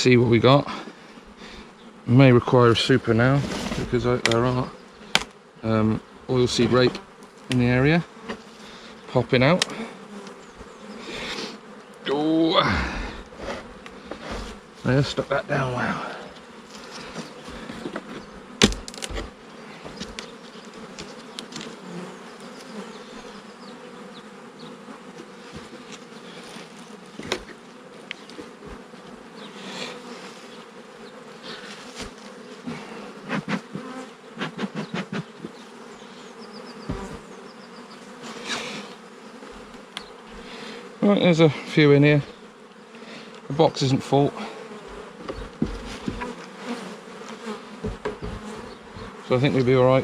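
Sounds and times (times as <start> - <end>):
honeybees buzzing: 0.0 - 50.0
wooden hive parts knocking: 3.6 - 5.3, 17.0 - 21.8, 27.1 - 28.8, 33.2 - 35.7, 36.8 - 37.4, 44.8 - 46.5, 47.8 - 49.8.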